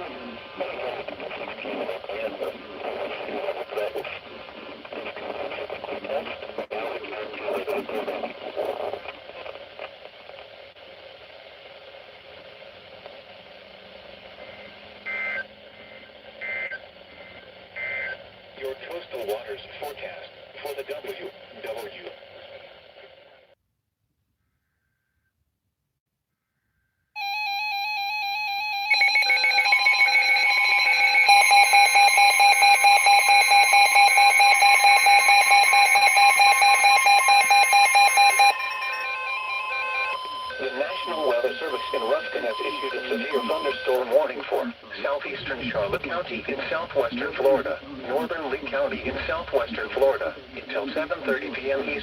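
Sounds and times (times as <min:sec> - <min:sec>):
radio hiss and static: 0:00.0 - 0:23.6, 0:28.9 - 0:52.0
warbling two-tone data tones: 0:28.7 - 0:44.3.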